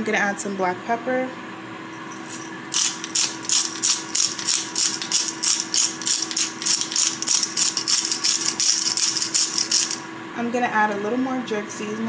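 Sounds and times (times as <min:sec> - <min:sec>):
pepper grinder gritty clicks: 0:02.8 - 0:10.0.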